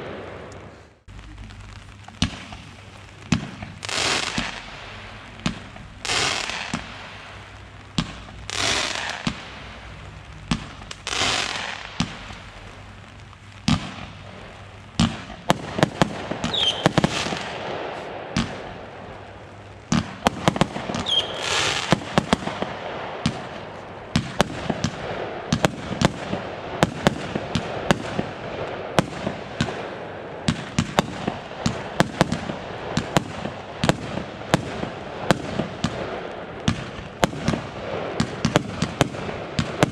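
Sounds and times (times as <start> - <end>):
firework bangs: 0.0 - 39.9
firework crackling: 0.0 - 39.9
firework shots hissing up: 2.2 - 12.4, 15.0 - 18.8, 19.9 - 28.3
firework whistles: 16.4 - 17.5, 20.9 - 22.2.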